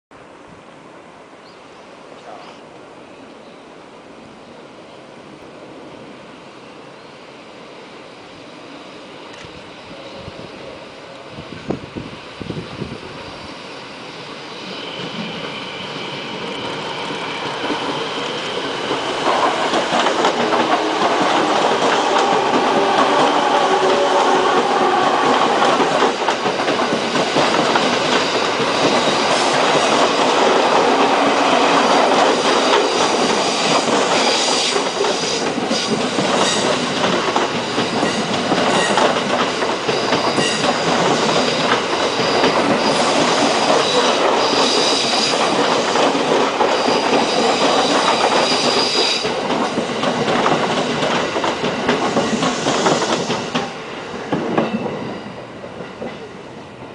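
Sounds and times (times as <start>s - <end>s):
electric train pulling in: 3.0s - 56.9s
high wheel squeal: 39.9s - 45.5s, 46.6s - 49.3s.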